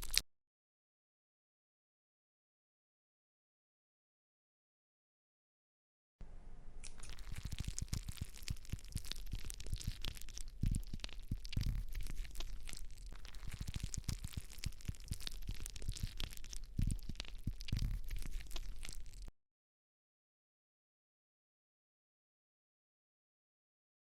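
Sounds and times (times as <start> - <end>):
slime squishing by hand: 0.0 - 0.2, 6.8 - 19.3
sticky crackles and pops: 0.0 - 0.2, 6.8 - 19.3.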